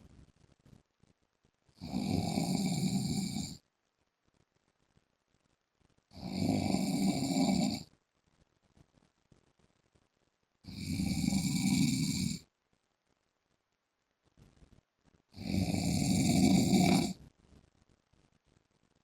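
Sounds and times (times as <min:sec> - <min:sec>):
man snoring loudly: 0:01.8 - 0:03.6, 0:06.2 - 0:07.8, 0:10.7 - 0:12.4, 0:15.4 - 0:17.2.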